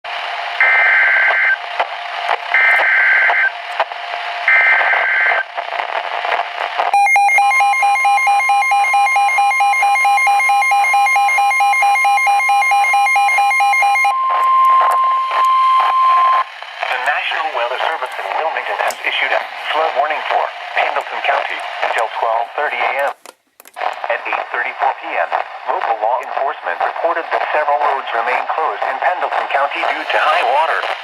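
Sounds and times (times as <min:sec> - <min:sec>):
radio hiss: 0:00.1 - 0:06.9, 0:14.3 - 0:31.0
long steady attention tone: 0:06.9 - 0:23.0
fast pulsing alarm beep: 0:07.0 - 0:16.5.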